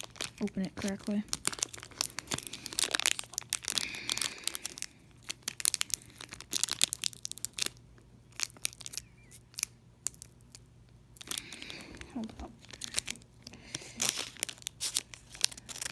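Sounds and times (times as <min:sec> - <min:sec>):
foil wrapper crinkling and tearing: 0:00.0 - 0:15.9.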